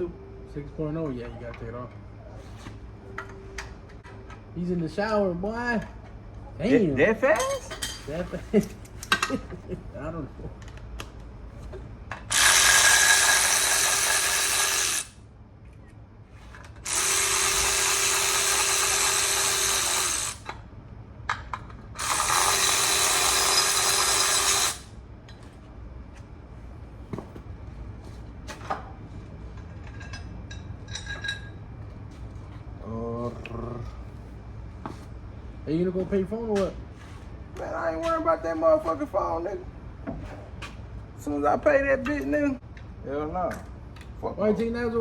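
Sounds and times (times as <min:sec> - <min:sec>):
steady hum: 0:00.0 - 0:45.0
tools and parts clicking and knocking: 0:08.8 - 0:09.5, 0:21.3 - 0:22.3, 0:29.5 - 0:31.6
impact wrench: 0:12.3 - 0:15.2, 0:16.8 - 0:20.5, 0:22.0 - 0:24.9.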